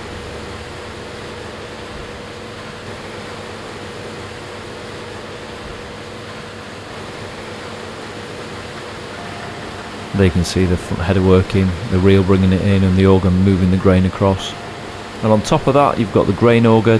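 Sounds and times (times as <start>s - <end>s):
combine harvester running: 6.3s - 16.9s.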